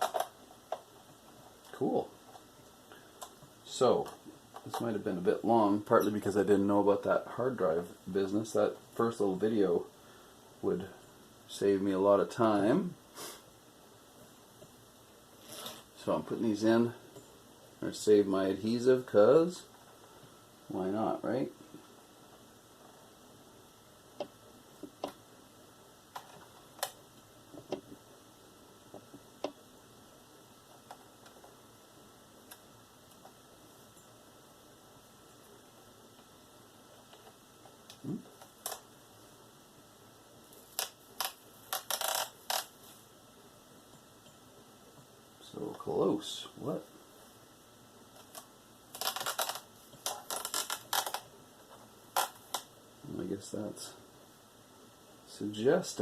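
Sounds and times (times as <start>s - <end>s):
laptop parts clicking: 0.0s - 1.4s, 40.6s - 42.7s, 48.2s - 51.3s.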